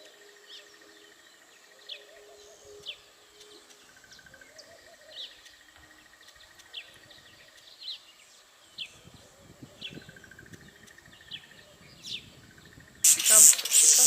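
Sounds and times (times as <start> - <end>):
pulsing insect trill: 0.0 - 7.8, 12.5 - 14.0.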